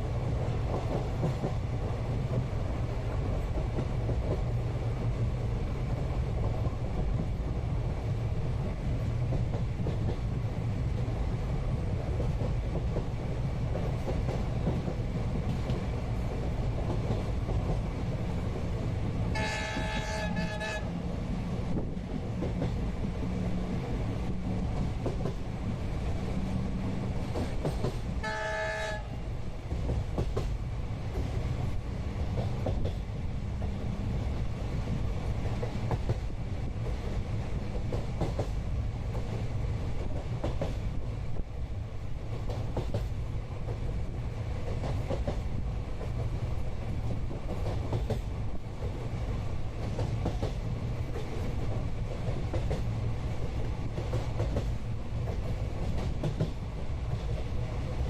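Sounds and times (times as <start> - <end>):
train coach rumble: 0.0 - 58.0
train horn: 19.3 - 21.0, 28.2 - 29.3.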